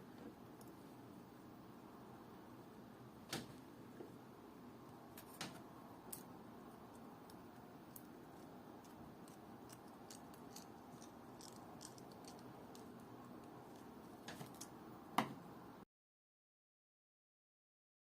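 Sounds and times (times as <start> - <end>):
steady low hum: 0.0 - 15.8
metal tools clicking: 7.3 - 13.0.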